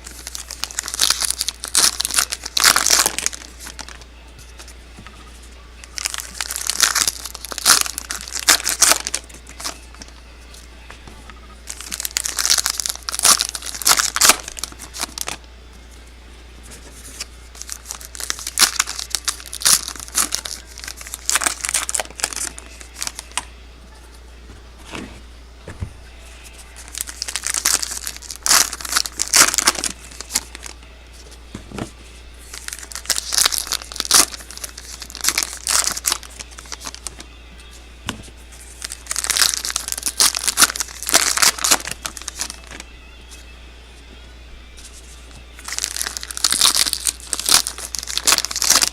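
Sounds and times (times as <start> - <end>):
wrappers tearing and crinkling: 0.0 - 4.0, 5.8 - 10.1, 11.6 - 15.4, 17.0 - 23.4, 26.8 - 30.8, 32.5 - 37.3, 38.7 - 42.9, 45.6 - 48.9.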